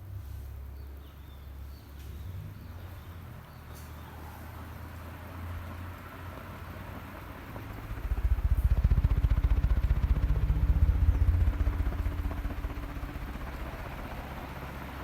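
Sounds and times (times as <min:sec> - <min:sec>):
ceiling fan running: 0:00.0 - 0:15.0.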